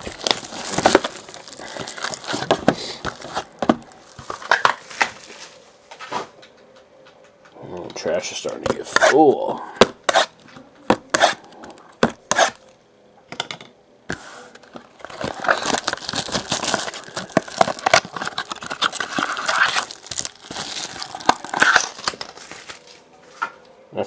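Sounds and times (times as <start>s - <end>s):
card pack wrappers tearing: 0.0s - 5.2s, 14.6s - 22.9s.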